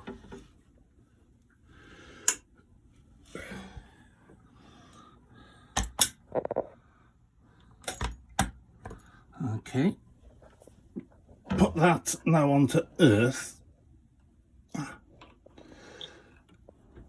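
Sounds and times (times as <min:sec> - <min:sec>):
faint breathing: 0:01.6 - 0:02.5, 0:03.3 - 0:05.9, 0:15.6 - 0:16.5.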